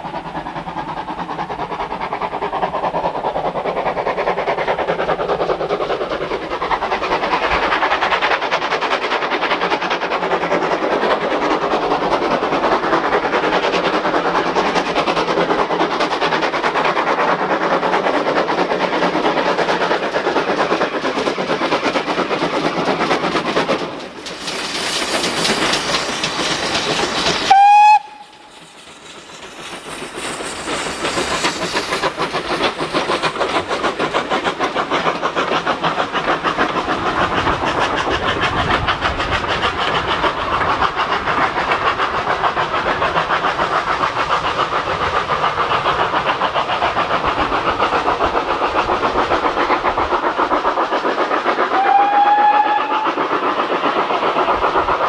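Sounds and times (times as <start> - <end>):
steam train wheels clattering: 0.0 - 55.0
steam whistle blast: 27.5 - 28.5, 51.8 - 53.1.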